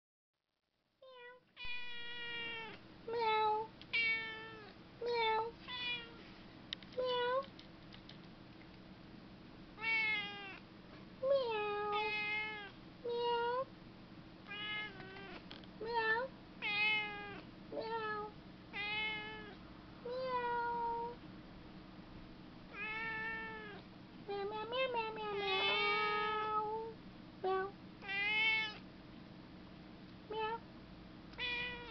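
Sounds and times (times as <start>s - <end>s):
cat meowing: 1.0s - 6.2s, 9.8s - 10.6s, 11.5s - 13.6s, 14.5s - 15.4s, 16.0s - 21.2s, 22.7s - 23.8s, 25.4s - 26.7s, 28.0s - 28.8s, 31.4s - 31.9s.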